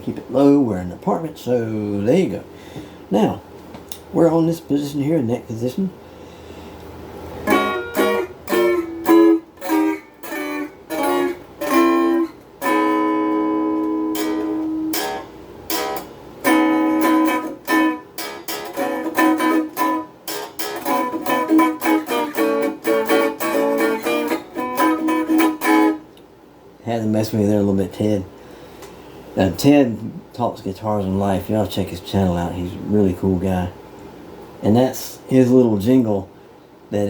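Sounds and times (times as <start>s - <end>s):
overdriven electric guitar playing: 7.4s - 26.1s.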